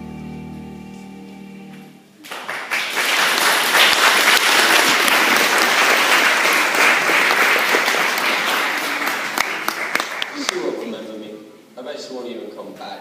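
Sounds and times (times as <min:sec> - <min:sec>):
audience applauding: 0:02.2 - 0:10.8.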